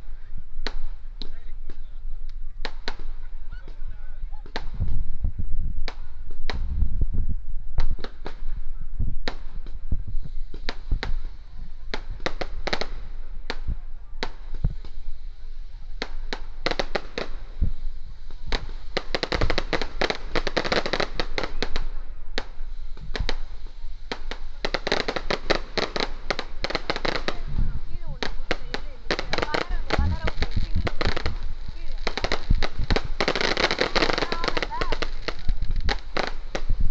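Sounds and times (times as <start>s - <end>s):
firecrackers banging: 7.7s - 36.9s.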